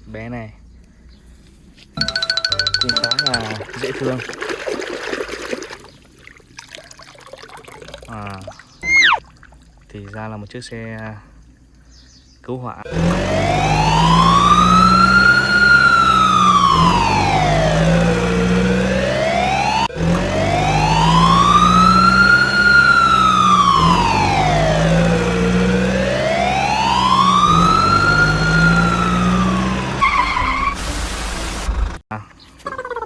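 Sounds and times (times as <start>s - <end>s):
toy electronic wailing siren: 8.8s - 9.2s, 12.9s - 29.8s.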